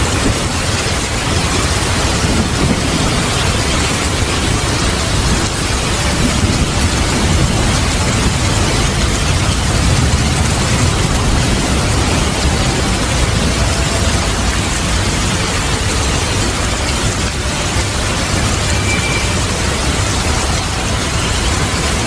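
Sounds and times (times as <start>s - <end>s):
heavy rain falling: 0.0s - 22.0s
low rumble of thunder: 1.9s - 15.3s.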